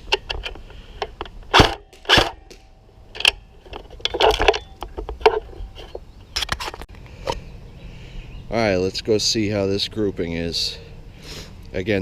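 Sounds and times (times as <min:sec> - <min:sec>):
handling knocks and rustles: 0:00.0 - 0:07.4.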